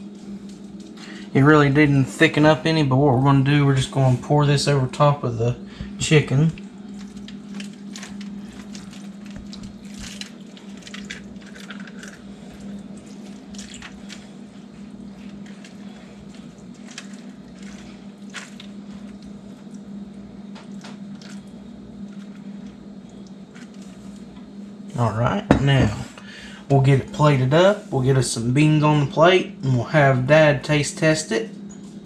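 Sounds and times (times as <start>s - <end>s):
steady low hum: 0.0s - 32.0s
liquid splashing and dripping: 16.3s - 23.4s.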